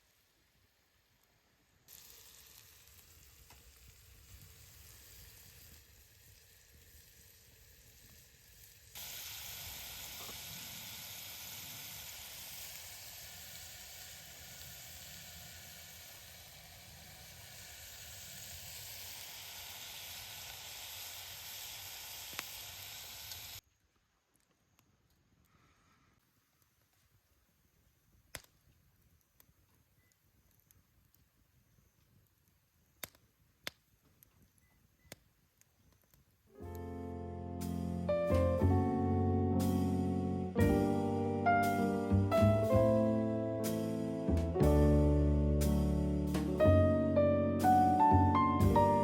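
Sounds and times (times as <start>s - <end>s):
food sizzling in a pan: 1.9s - 23.6s, 44.7s - 49.0s.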